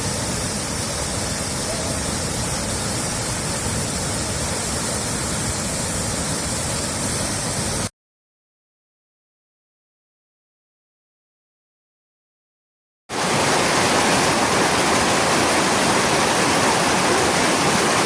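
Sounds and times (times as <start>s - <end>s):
waterfall rushing: 0.0s - 7.9s, 13.1s - 18.0s.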